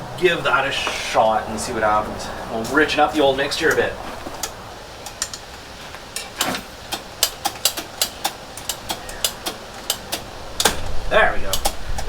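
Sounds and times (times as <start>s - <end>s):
hand tools clicking and tapping: 3.7s - 12.0s.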